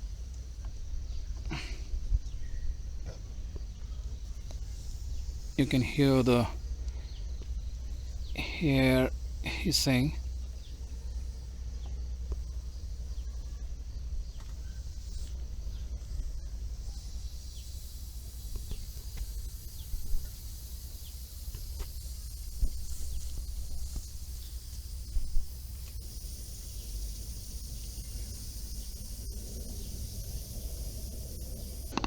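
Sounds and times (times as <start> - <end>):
air hissing from tyre: 14.2 - 32.0.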